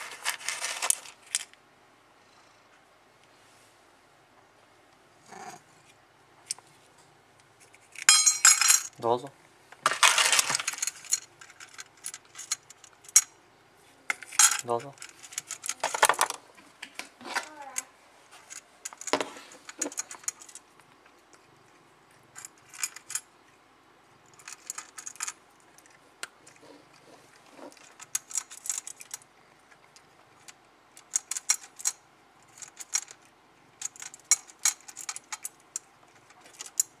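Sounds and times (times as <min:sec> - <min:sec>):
cat crunching food: 0:19.6 - 0:37.0.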